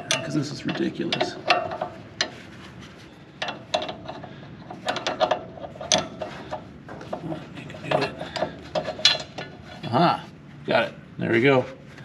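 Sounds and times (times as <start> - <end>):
wrench clinking on metal bolt: 0.0 - 2.4, 4.8 - 6.4.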